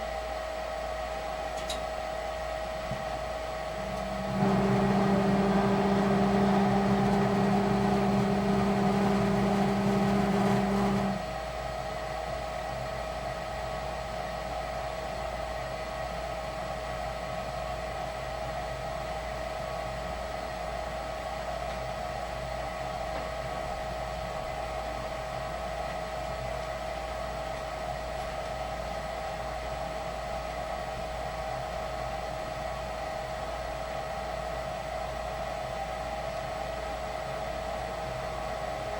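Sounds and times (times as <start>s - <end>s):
furnace humming: 0.0s - 13.4s
fan whir with high whine: 0.0s - 38.9s.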